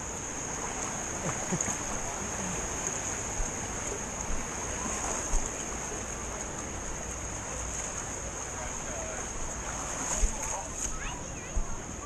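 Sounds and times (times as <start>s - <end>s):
water rushing down a slide: 0.0s - 11.6s.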